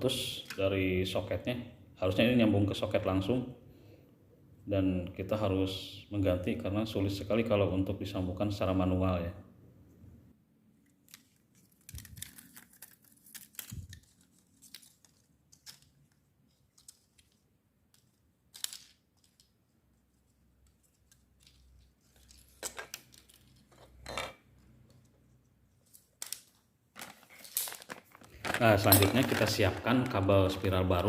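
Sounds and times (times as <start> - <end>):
small plastic parts clicking: 10.8 - 19.6.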